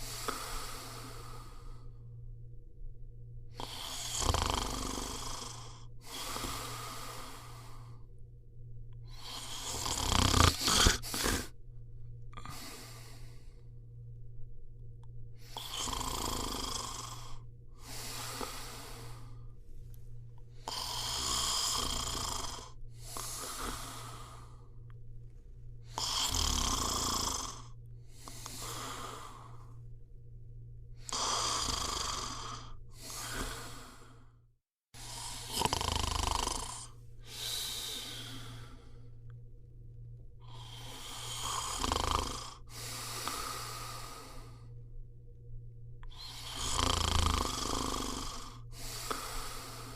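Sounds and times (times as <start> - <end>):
person snoring: 0.0 - 2.0, 3.5 - 8.1, 9.0 - 11.6, 12.3 - 13.6, 15.4 - 19.5, 20.6 - 24.9, 25.8 - 29.8, 31.0 - 34.3, 35.0 - 39.2, 40.4 - 44.8, 46.0 - 49.9
steady low hum: 0.0 - 49.9.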